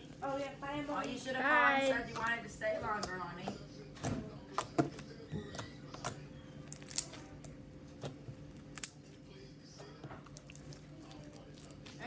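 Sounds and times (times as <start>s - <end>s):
slime squeezed and stretched: 6.7s - 7.3s.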